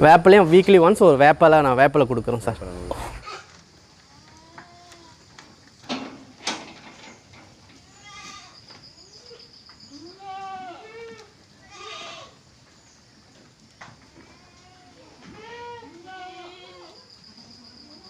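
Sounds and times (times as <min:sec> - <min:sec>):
goats bleating: 0:07.8 - 0:08.6, 0:10.0 - 0:12.4, 0:14.2 - 0:17.0.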